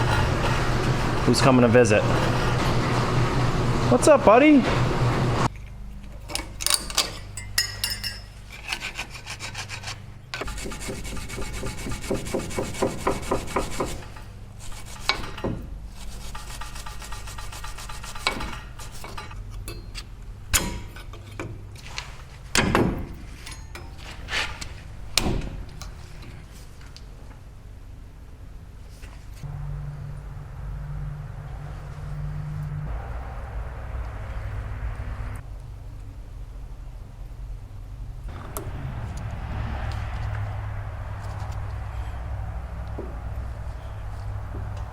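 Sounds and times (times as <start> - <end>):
hand tool scraping rusty metal: 0.0 - 3.6, 5.5 - 25.0
metal knocks and clinks: 5.5 - 8.8, 22.6 - 26.0.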